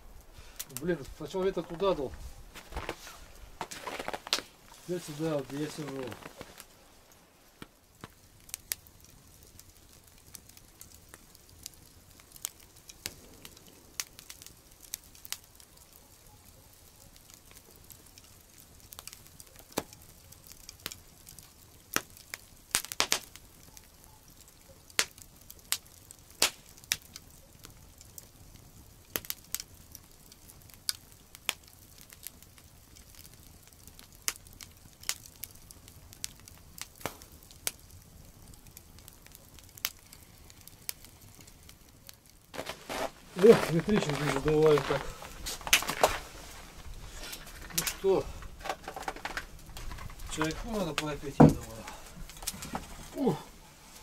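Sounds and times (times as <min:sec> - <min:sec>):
faint hiss: 0:00.0 - 0:09.0, 0:42.5 - 0:48.6
campfire crackling and popping: 0:00.0 - 0:54.0.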